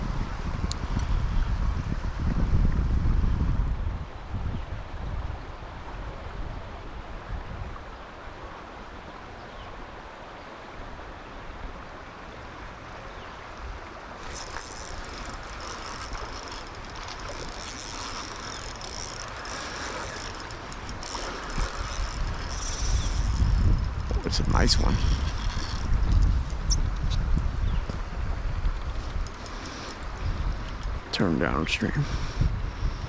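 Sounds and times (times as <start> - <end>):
river water running: 0.0 - 33.0
fishing reel ticking: 14.2 - 26.8, 29.2 - 30.9.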